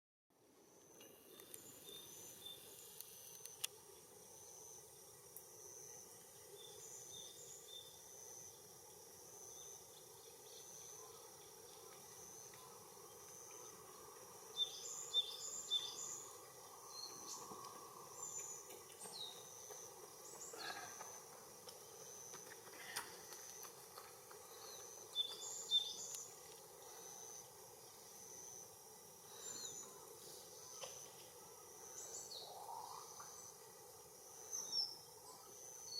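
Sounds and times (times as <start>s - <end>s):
insect trill: 0.6s - 35.9s
small birds chirping: 9.6s - 23.6s, 24.2s - 28.1s.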